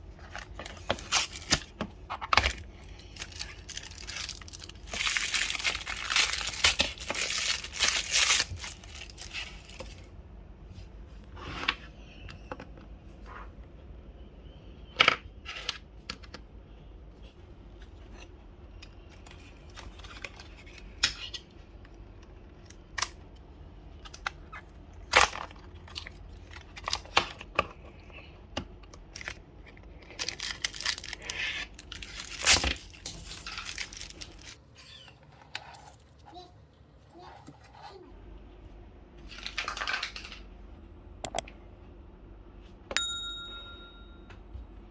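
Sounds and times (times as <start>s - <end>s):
packaging crinkling: 0.2s - 10.1s, 29.1s - 34.7s
packaging cut and torn open: 30.2s - 34.5s.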